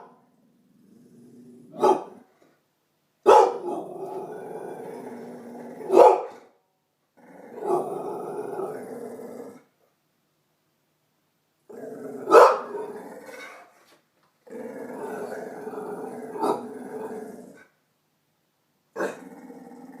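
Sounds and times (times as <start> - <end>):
dog growling: 0.4 - 2.2, 3.6 - 6.0, 7.2 - 9.7, 11.7 - 13.7, 14.4 - 17.7, 19.0 - 20.0
dog barking sharply: 1.8 - 2.2, 3.3 - 3.8, 5.9 - 6.4, 12.3 - 12.7.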